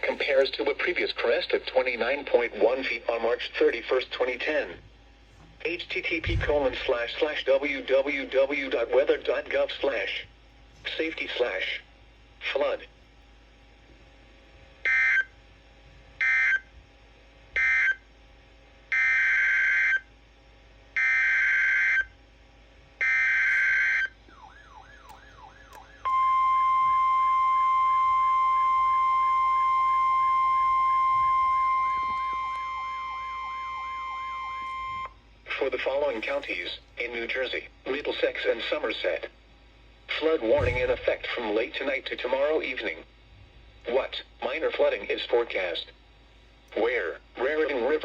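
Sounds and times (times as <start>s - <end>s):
steady warning alarm tone: 14.8s - 15.5s, 16.2s - 16.8s, 17.5s - 18.1s, 18.9s - 20.1s, 20.9s - 22.2s, 22.9s - 38.4s.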